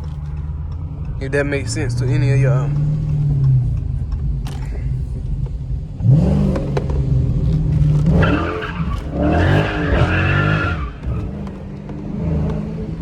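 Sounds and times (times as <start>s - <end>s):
car engine revving: 0.0s - 13.0s
tyres squealing: 8.0s - 11.4s.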